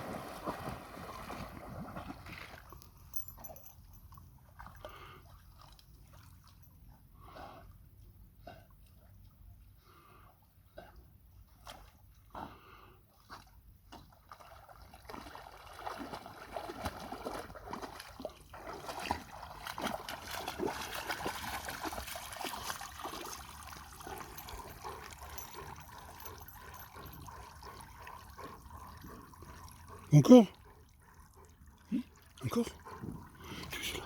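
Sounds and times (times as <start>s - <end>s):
dog splashing in water: 0.0s - 2.7s, 14.0s - 26.1s.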